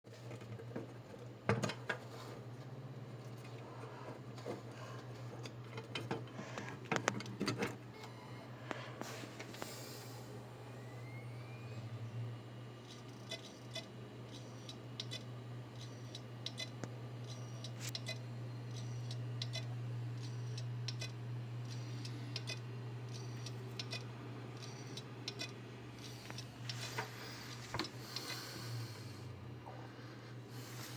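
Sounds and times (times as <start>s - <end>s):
steady low hum: 0.1s - 30.9s
hard drive clicking: 4.4s - 8.8s, 10.7s - 29.6s.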